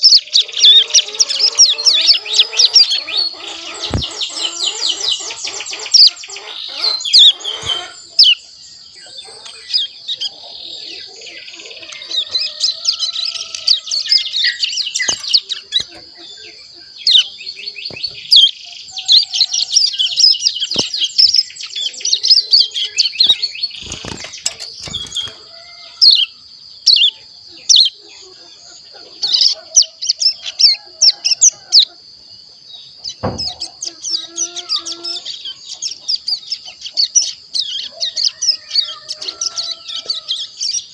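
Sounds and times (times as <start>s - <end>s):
young bird twittering: 0.0s - 28.0s
sharp clicks and knocks: 23.8s - 25.4s.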